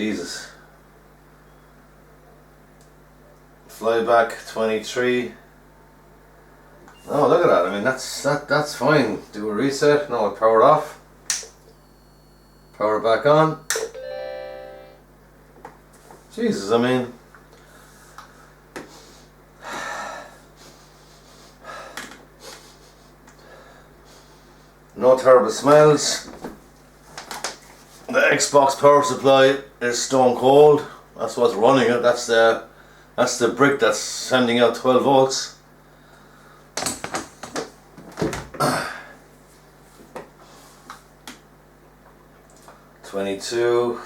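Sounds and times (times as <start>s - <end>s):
faint steady hum: 0.0s - 44.0s
sharp click: 11.3s - 11.6s.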